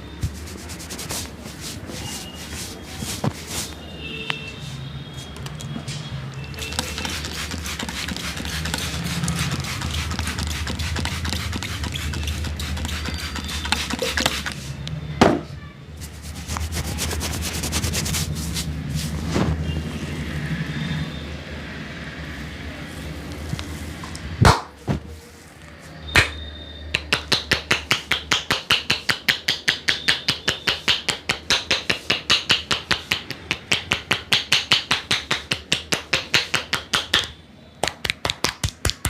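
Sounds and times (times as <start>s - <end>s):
hands rubbing and tapping head: 0.2s - 3.8s, 6.6s - 14.7s, 16.0s - 19.5s, 27.0s - 39.0s
sharp slap: 24.4s - 24.8s, 26.2s - 26.4s.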